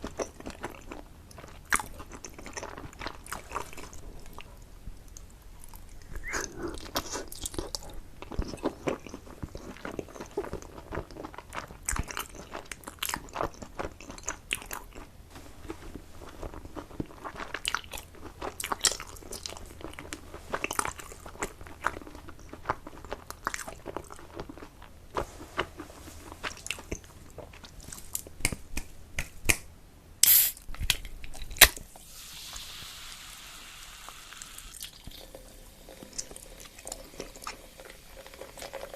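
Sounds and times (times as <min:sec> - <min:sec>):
chewing and biting food: 0:00.0 - 0:04.6, 0:05.2 - 0:29.3
wet mouth clicks and smacks: 0:28.4 - 0:29.6.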